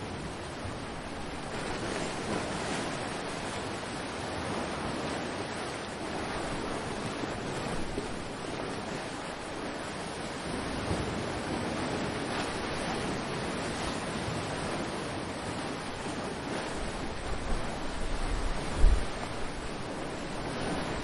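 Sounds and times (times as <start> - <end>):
ocean surf on shore: 0.0 - 21.0
wind buffeting microphone: 10.4 - 21.0.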